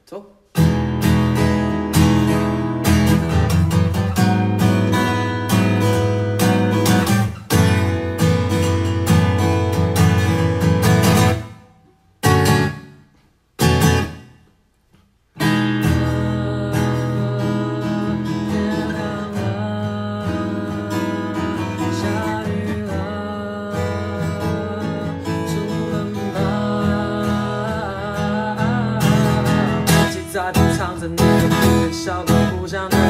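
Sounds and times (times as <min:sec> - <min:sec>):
acoustic guitar strumming chords: 0:00.5 - 0:14.6, 0:15.3 - 0:33.0.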